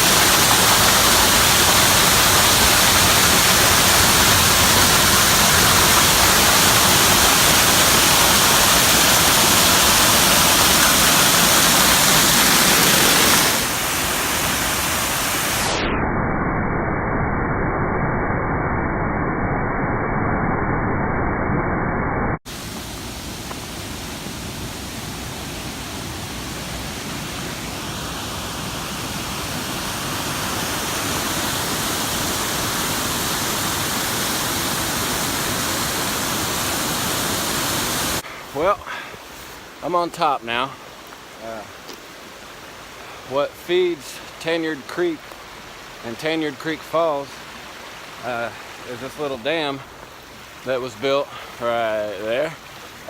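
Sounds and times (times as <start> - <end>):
waterfall rushing: 0.0 - 15.8, 22.5 - 53.0.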